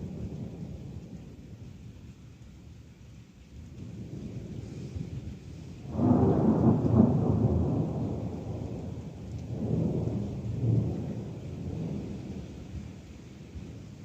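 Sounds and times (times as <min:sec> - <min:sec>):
steady rain: 0:00.0 - 0:14.0
thunder rumbling: 0:03.7 - 0:14.0.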